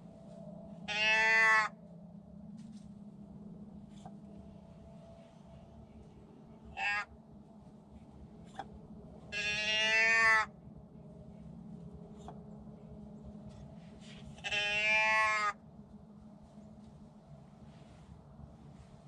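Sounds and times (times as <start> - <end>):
long bleating calls: 0.8 - 1.8, 9.3 - 10.5, 14.4 - 15.6.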